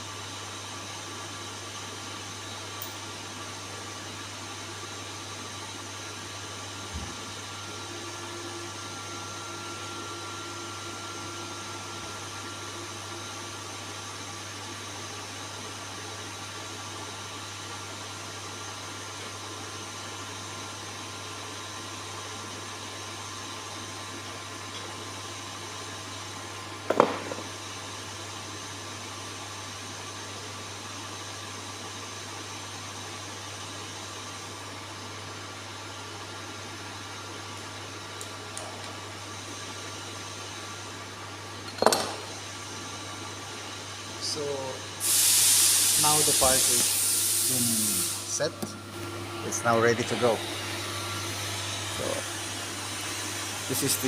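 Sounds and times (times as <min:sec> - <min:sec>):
milling machine humming: 0:00.2 - 0:28.2, 0:32.5 - 0:54.0
sharp knock: 0:26.9 - 0:27.5.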